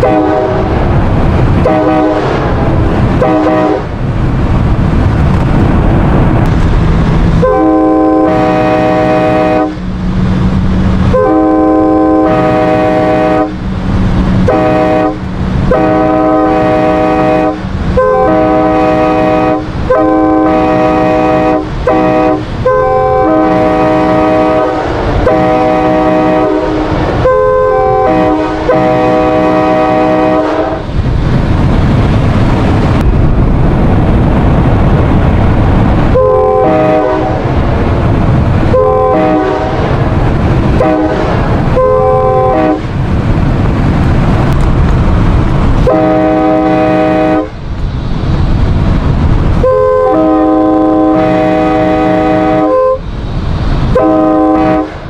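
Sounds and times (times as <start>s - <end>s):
train horn blasts: 0.0s - 0.8s, 1.5s - 2.5s, 3.2s - 4.0s, 7.4s - 9.9s, 11.0s - 13.6s, 14.4s - 30.9s, 36.1s - 37.4s, 38.7s - 39.9s, 40.6s - 42.9s, 45.8s - 47.6s, 49.6s - 53.0s, 53.9s - 55.0s
rumble: 0.0s - 55.0s.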